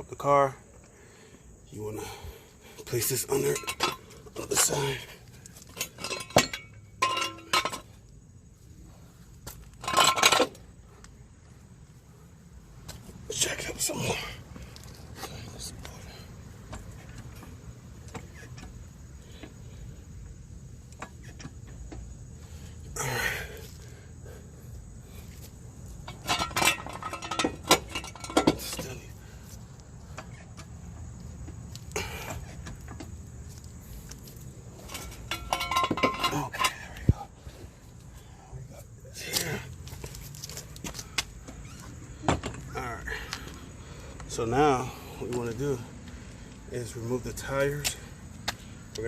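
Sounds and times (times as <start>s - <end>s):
metal jack stand clanking: 2.9s - 5.0s, 5.7s - 7.9s, 9.8s - 10.6s, 26.0s - 29.0s, 34.8s - 37.0s.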